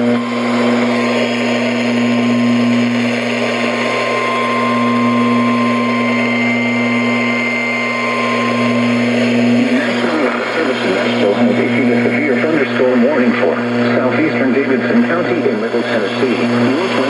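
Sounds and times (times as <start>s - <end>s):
two-tone alarm: 0.0s - 12.0s
low electrical hum: 0.0s - 17.0s.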